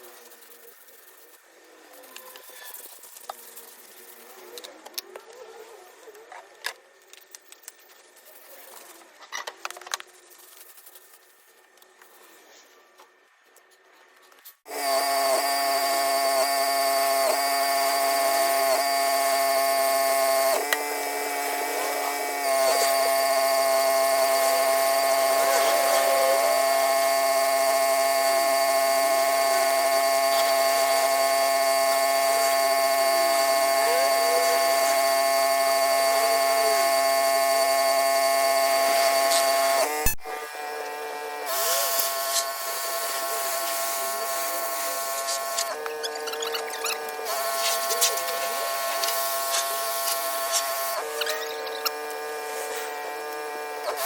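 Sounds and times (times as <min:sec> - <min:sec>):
pressure washer whine: 0:14.7 - 0:54.0.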